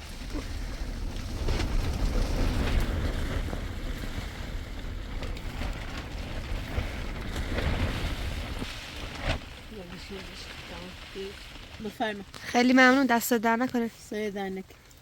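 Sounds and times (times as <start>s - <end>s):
wind buffeting microphone: 0.0s - 11.9s
steady rain falling: 0.0s - 15.0s.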